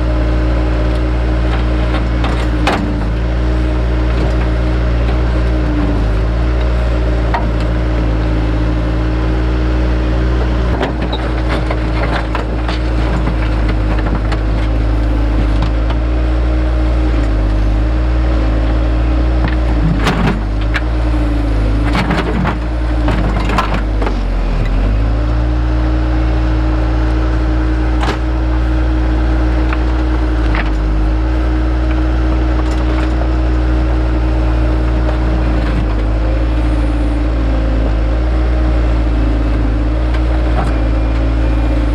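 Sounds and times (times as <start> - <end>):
digging machine engine: 0.0 - 41.9.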